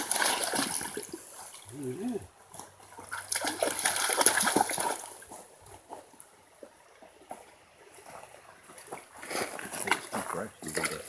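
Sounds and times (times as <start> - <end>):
dog splashing in water: 0.0 - 1.6, 2.5 - 5.3.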